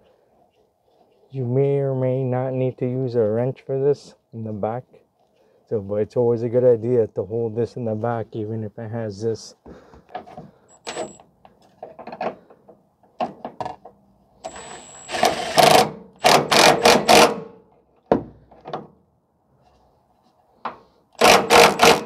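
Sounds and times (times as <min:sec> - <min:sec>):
power tool driving bolt: 0:10.7 - 0:11.2, 0:14.4 - 0:17.6, 0:21.2 - 0:22.0.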